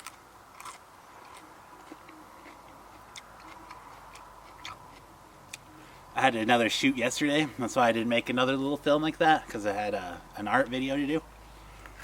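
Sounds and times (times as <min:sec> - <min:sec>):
chewing raw vegetables: 0:00.0 - 0:05.6.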